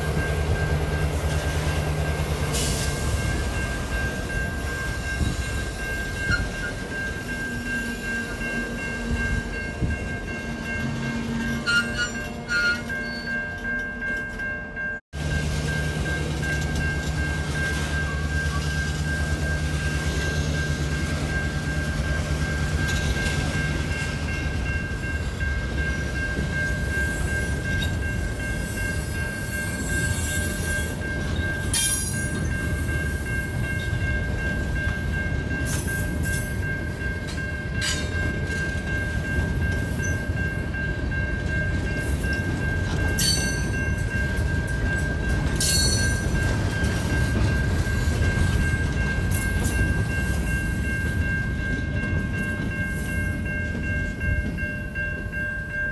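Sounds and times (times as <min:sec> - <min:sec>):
train wheels rumbling on rail: 0:00.0 - 0:55.9
metallic squeals and clanks: 0:11.3 - 0:13.8.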